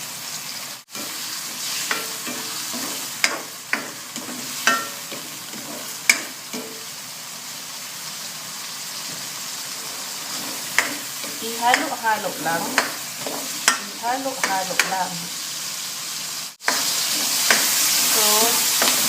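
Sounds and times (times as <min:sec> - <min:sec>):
vegetables sizzling in oil: 0:00.0 - 0:19.0
metal spatula scraping wok: 0:00.9 - 0:07.0, 0:09.1 - 0:14.9, 0:16.6 - 0:19.0.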